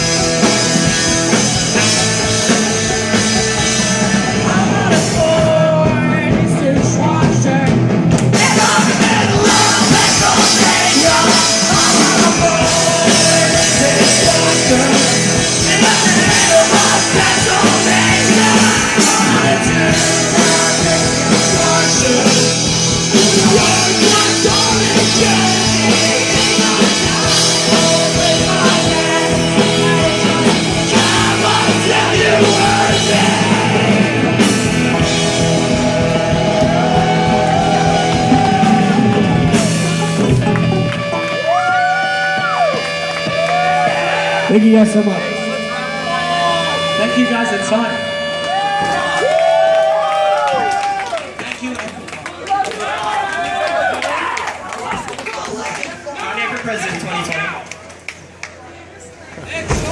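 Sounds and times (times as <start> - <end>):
sung and yelled vocals: 0.0 - 40.2
punk rock band playing live: 0.0 - 52.0.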